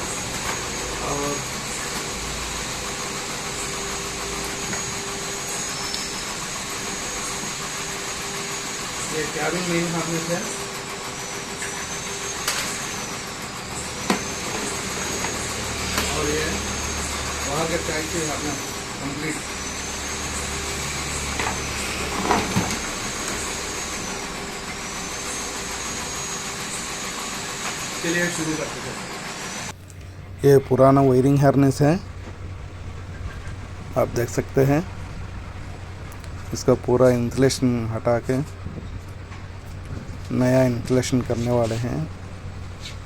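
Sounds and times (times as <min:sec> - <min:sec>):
faint constant hum: 0:00.0 - 0:43.0
faint high whine: 0:00.0 - 0:43.0
steady machine noise: 0:00.0 - 0:43.0.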